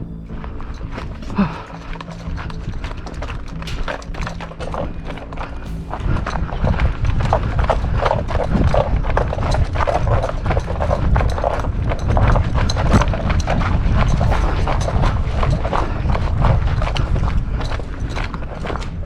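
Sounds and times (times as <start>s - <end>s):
clatter of knocks and rattles: 0.0s - 19.0s
quick running footsteps: 0.0s - 19.0s.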